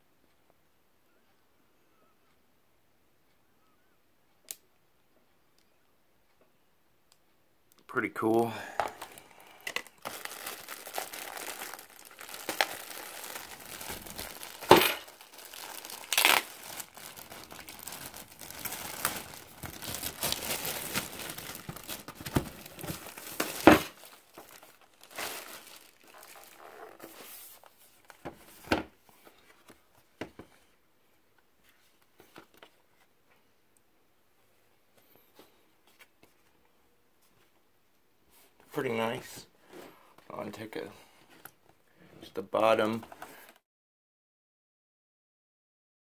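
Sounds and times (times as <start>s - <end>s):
packaging crinkling and rustling: 8.9s - 28.7s.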